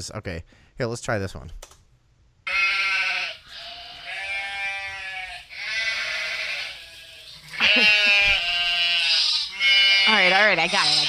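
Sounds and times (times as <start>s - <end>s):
sheep-like bleating: 2.5s - 11.0s.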